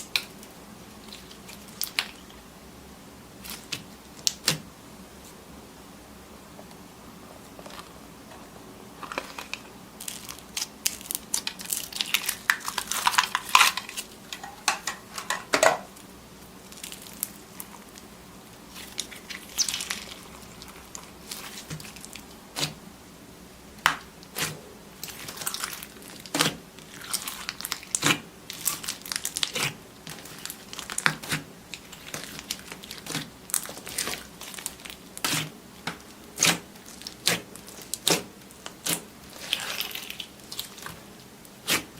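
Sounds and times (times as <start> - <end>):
slime crackling and popping: 9.1 - 14.1, 16.6 - 18.1, 18.7 - 22.8, 23.8 - 41.9.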